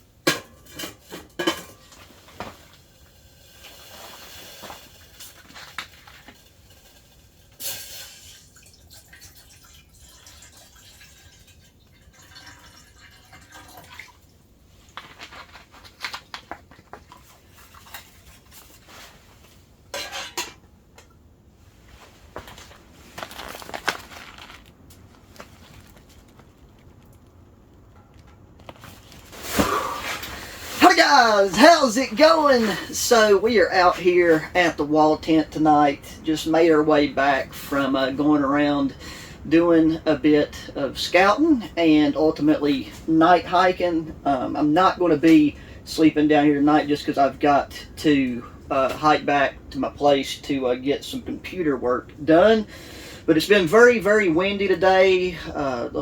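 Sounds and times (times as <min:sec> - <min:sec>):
camp cookware clinking: 0:00.2 - 0:02.1, 0:19.9 - 0:20.7
liquid dripping and trickling: 0:08.1 - 0:15.0.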